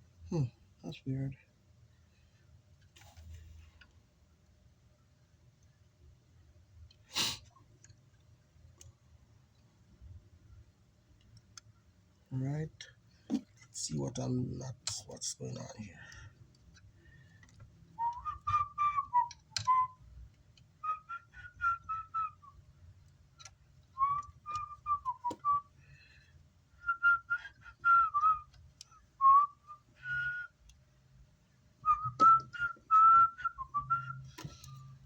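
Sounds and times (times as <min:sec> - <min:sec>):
person whistling a tune: 0:18.0 - 0:20.0, 0:20.8 - 0:22.6, 0:24.0 - 0:25.7, 0:26.8 - 0:28.5, 0:29.2 - 0:30.6, 0:31.8 - 0:35.0.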